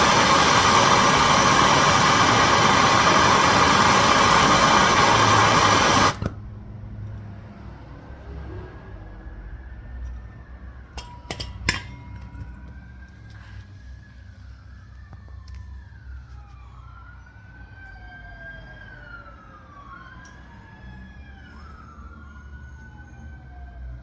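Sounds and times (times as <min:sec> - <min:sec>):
emergency sirens wailing: 0:00.0 - 0:06.4, 0:08.2 - 0:24.0.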